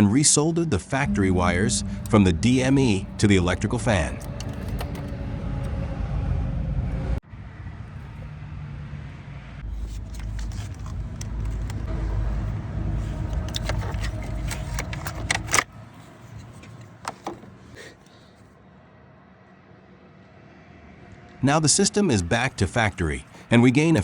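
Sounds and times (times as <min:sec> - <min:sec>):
car engine running: 0:01.0 - 0:07.2, 0:09.6 - 0:15.7.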